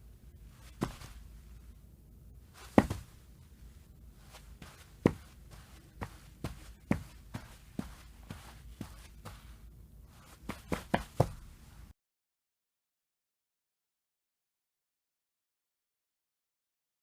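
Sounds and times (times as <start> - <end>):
running footsteps: 2.6 - 3.1, 4.6 - 9.5, 10.3 - 11.4.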